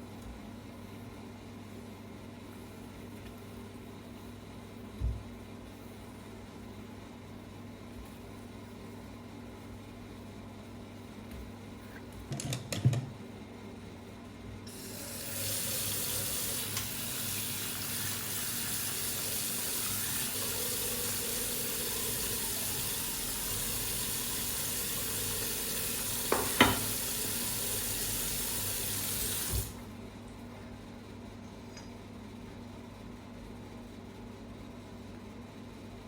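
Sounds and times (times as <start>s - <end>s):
tap water running into sink: 14.7s - 29.8s.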